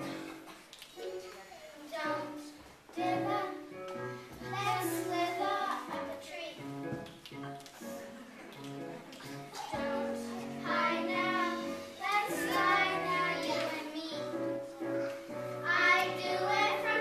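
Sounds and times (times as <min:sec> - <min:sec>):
children singing: 0:04.5 - 0:06.3, 0:09.4 - 0:15.0, 0:15.6 - 0:17.0.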